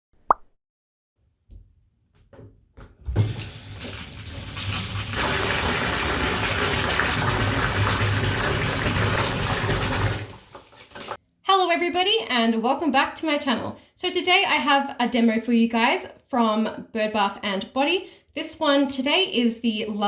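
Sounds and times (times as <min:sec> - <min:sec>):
tap water running into bathtub: 0:02.3 - 0:11.2.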